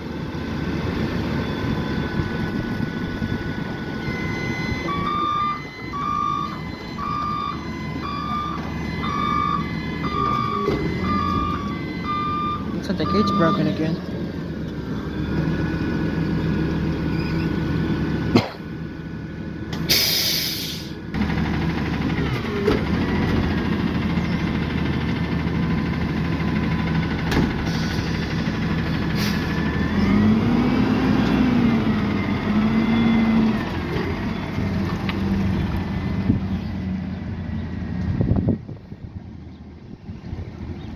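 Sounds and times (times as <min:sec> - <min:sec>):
garbage truck engine running: 0:00.0 - 0:40.9
air brakes hissing: 0:19.8 - 0:21.0, 0:27.6 - 0:29.7.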